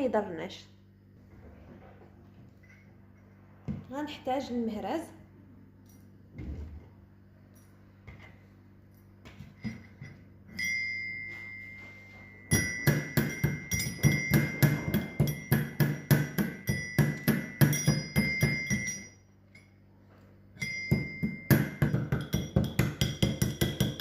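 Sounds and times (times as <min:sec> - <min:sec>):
pestle pounding in metal mortar: 0:12.5 - 0:19.1, 0:20.6 - 0:24.0.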